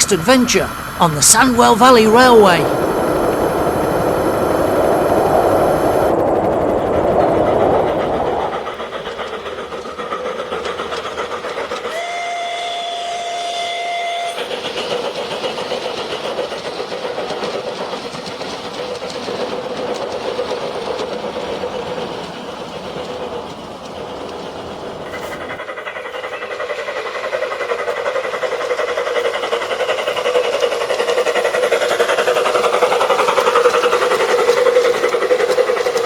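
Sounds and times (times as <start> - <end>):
rushing noise: 0.0 - 9.9
model steam locomotive chuffing: 0.0 - 36.0
train whistle: 11.8 - 14.6.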